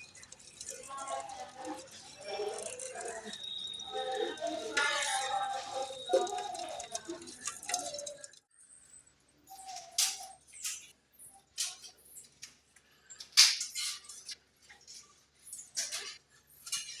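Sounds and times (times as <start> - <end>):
crabs clicking and scraping: 0.1 - 8.5.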